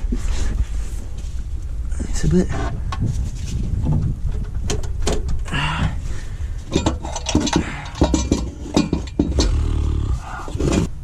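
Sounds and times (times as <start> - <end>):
metallic knocks and clanks: 6.7 - 9.8
low drone: 9.1 - 11.0.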